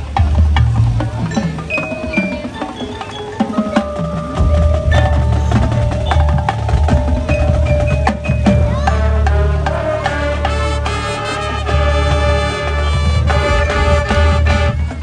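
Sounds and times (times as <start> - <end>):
marching band playing: 0.0 - 15.0
sharp percussion strikes: 0.1 - 15.0
chimes: 1.3 - 8.9.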